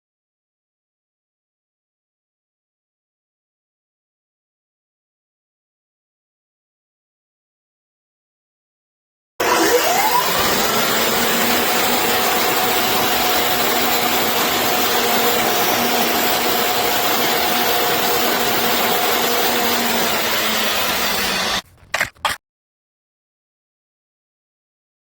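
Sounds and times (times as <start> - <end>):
concrete saw motor whining: 9.4 - 22.4.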